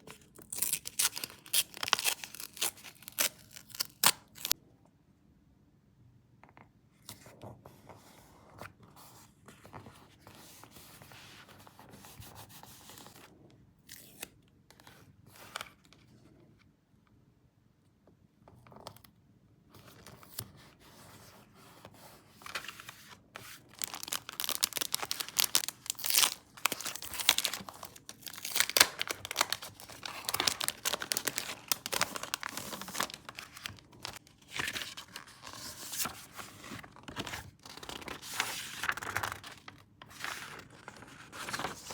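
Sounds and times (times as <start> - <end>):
paper rustling and tearing: 22.4 - 41.9.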